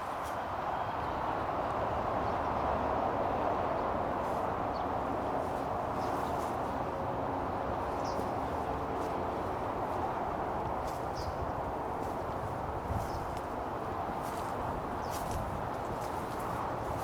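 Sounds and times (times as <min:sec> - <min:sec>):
songbirds chirping: 0:03.7 - 0:17.0.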